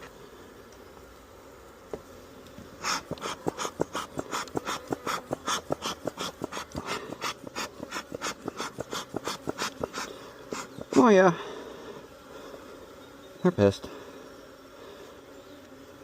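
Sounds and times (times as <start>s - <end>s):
bellows puffing air: 2.8s - 12.5s.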